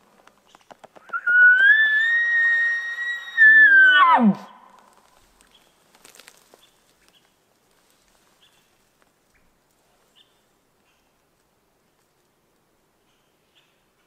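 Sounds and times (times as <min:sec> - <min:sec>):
faint rustling: 0:04.7 - 0:12.7.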